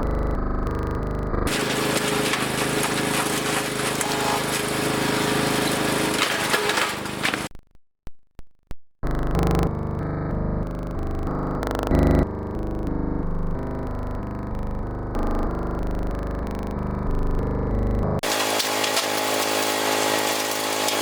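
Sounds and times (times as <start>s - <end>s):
wood chipper chipping brush: 1.5s - 7.5s, 18.2s - 21.0s.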